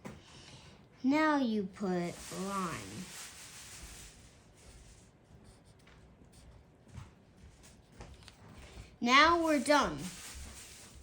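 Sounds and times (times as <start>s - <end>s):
pencil scratching on paper: 4.7s - 6.7s, 9.1s - 11.0s.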